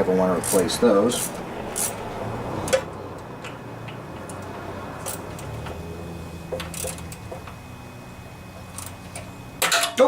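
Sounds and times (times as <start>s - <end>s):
low steady hum: 0.0s - 10.0s
metal parts clicking: 0.4s - 2.0s, 6.5s - 7.3s.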